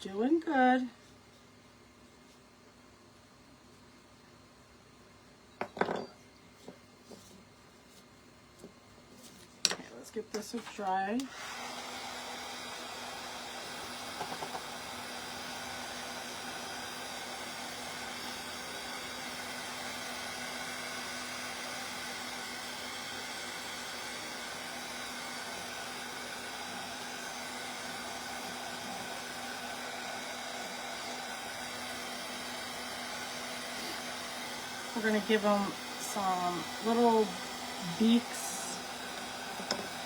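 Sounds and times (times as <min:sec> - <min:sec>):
hot-air dryer blowing: 0:09.9 - 0:40.0.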